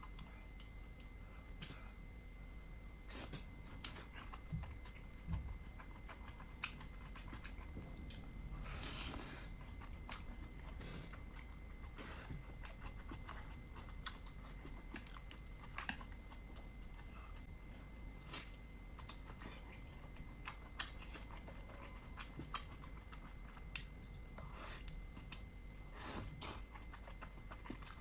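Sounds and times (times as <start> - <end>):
faint high whine: 0.0 - 28.0
close chewing with wet smacks: 3.4 - 8.7, 9.4 - 28.0.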